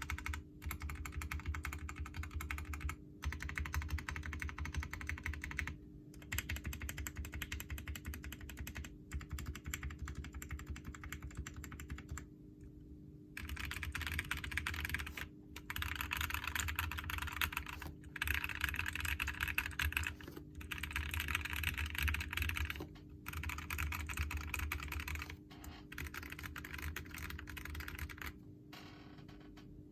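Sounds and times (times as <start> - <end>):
muted mechanical keyboard clacks: 0.0 - 12.3, 13.4 - 29.6.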